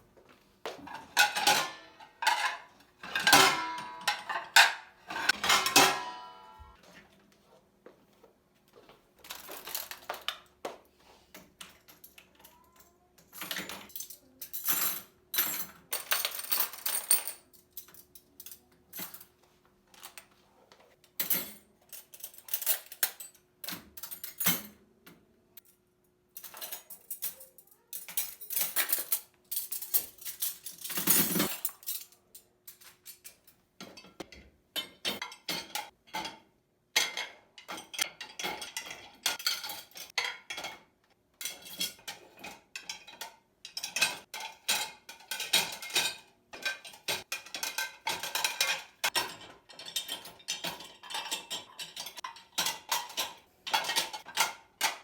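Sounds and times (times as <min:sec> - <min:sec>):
dishes and cutlery clattering: 0:00.7 - 0:06.8, 0:26.4 - 0:55.0.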